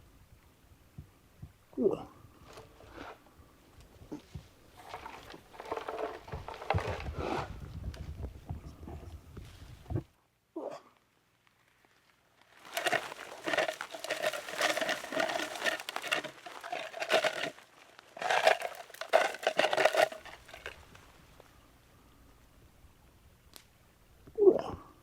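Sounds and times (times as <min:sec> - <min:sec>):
brush and branches raked: 0:04.8 - 0:07.0, 0:12.4 - 0:21.2.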